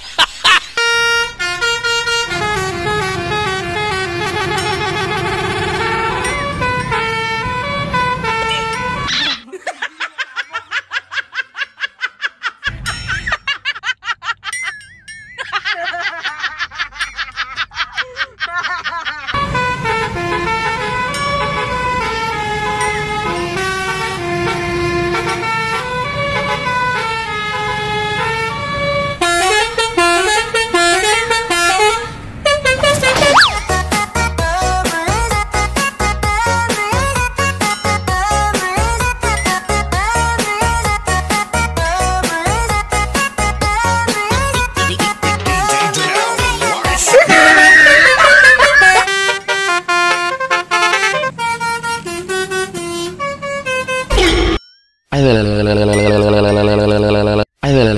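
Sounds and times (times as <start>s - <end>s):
multi-note bus air horn: 0.7s - 9.1s, 19.4s - 36.3s, 47.0s - 54.5s.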